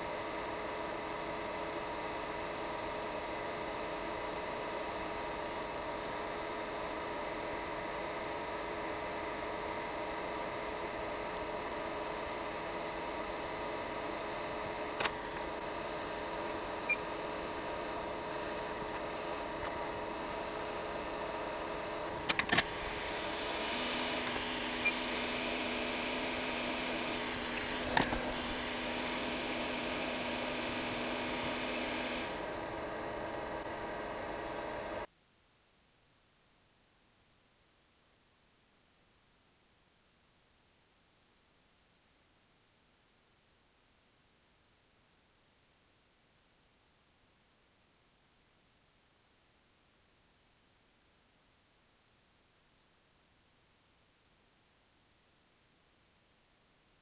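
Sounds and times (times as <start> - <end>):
equipment hum and hiss: 0.0 - 57.0
tool clicks: 22.2 - 22.9.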